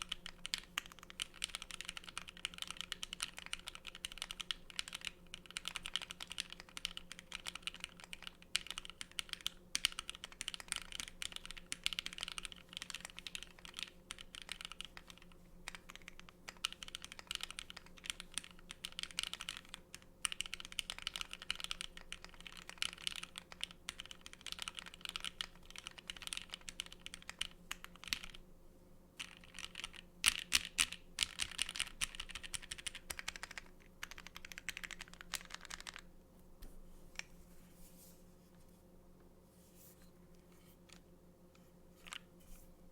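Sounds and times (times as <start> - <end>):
mechanical keyboard typing: 0.0 - 28.4, 29.2 - 36.1
faint steady hum: 0.0 - 42.9.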